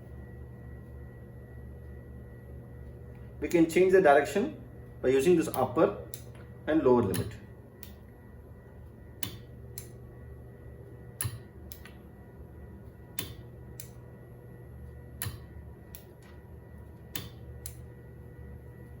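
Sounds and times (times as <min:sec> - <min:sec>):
stepper motor humming: 0:00.0 - 0:19.0
switches and relay clicking: 0:02.8 - 0:08.2, 0:08.8 - 0:10.1, 0:11.1 - 0:12.2, 0:12.8 - 0:14.1, 0:14.8 - 0:18.0.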